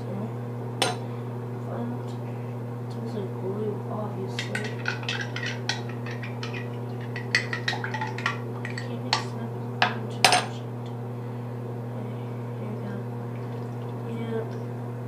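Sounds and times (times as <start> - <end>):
utensil clinking against container: 4.4 - 9.3
utensil stirring slime: 4.4 - 9.3.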